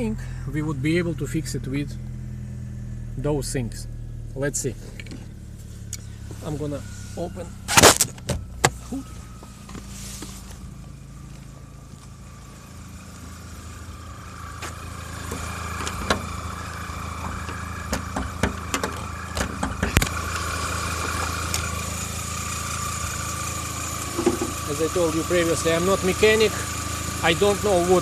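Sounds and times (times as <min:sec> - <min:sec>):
car engine idling: 0:00.0 - 0:28.0
hood opening clicks and knocks: 0:14.6 - 0:16.3, 0:17.2 - 0:21.7, 0:24.0 - 0:24.6.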